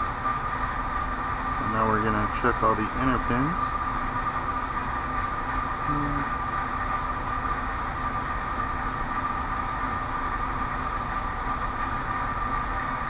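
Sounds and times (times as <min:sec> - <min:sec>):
background hum and hiss: 0:00.0 - 0:13.0.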